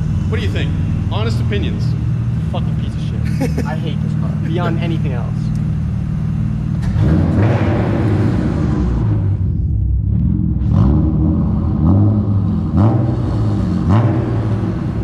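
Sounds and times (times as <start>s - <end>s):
car engine idling and revving: 0.0s - 15.0s.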